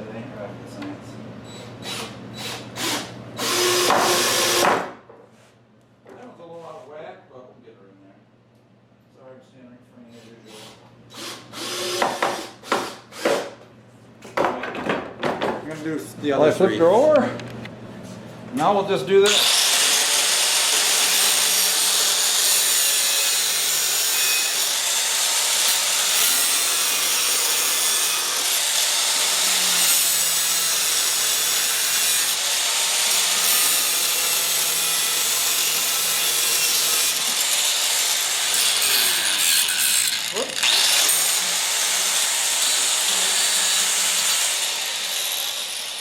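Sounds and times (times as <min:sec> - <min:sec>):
angle grinder grinding screws: 0:19.3 - 0:46.0.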